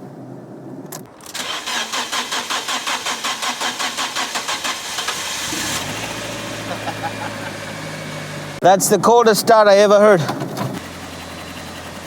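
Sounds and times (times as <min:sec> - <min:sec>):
car starter cranking: 0:01.1 - 0:07.7
car engine idling: 0:01.4 - 0:08.8, 0:09.4 - 0:12.0.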